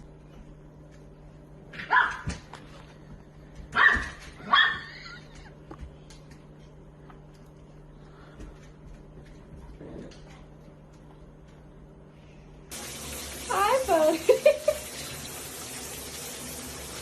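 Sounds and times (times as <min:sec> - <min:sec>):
dog barking: 0:01.8 - 0:02.4, 0:03.7 - 0:04.9.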